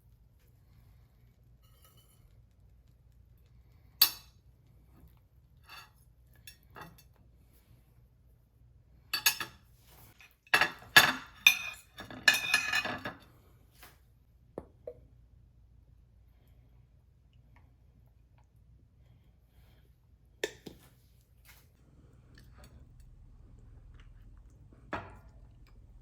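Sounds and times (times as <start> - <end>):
dishes and cutlery clattering: 9.2 - 13.2.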